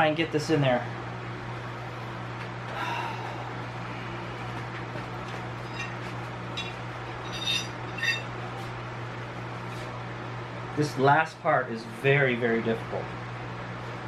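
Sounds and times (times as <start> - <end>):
garage fan humming: 0.0 - 14.0
tire levers clinking on rim: 5.6 - 8.3.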